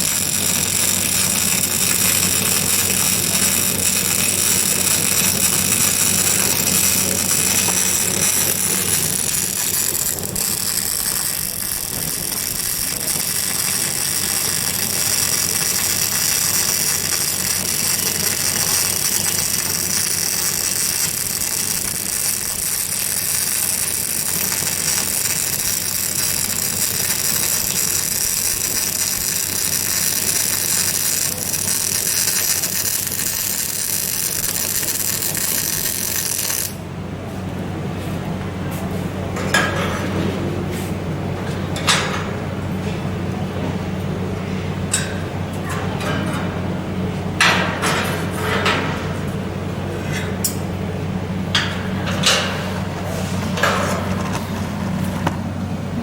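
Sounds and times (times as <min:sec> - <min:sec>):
welding arc crackling and hissing: 0:00.0 - 0:36.8
low electrical hum: 0:00.0 - 0:56.0.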